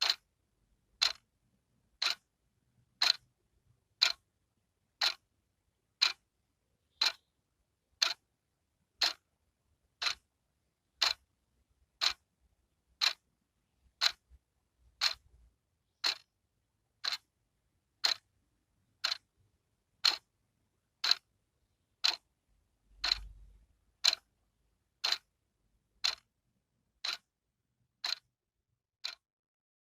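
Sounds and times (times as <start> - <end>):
clock ticking: 0.0 - 0.3, 0.9 - 1.3, 1.9 - 3.3, 4.0 - 4.3, 5.0 - 5.3, 6.0 - 7.3, 7.9 - 8.3, 9.0 - 9.3, 10.0 - 10.3, 10.9 - 11.3, 11.9 - 12.3, 12.9 - 16.3, 17.0 - 17.3, 18.0 - 20.3, 21.0 - 24.3, 25.0 - 25.3, 26.0 - 26.4, 27.0 - 27.3, 28.0 - 28.3, 29.0 - 29.2.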